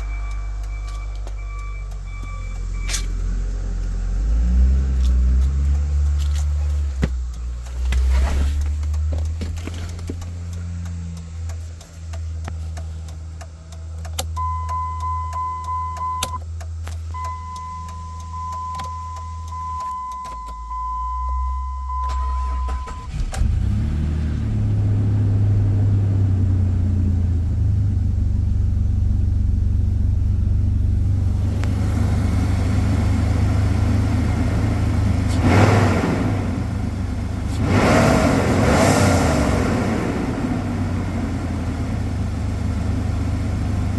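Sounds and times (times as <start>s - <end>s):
electronic warning chime: 0.0s - 3.2s, 17.2s - 23.0s
clicks: 0.0s - 23.5s
car engine starting and idling: 0.0s - 43.9s.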